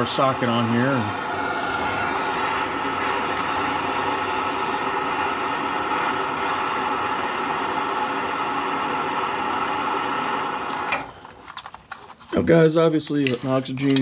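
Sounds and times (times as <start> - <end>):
gas torch hissing: 0.0 - 11.2.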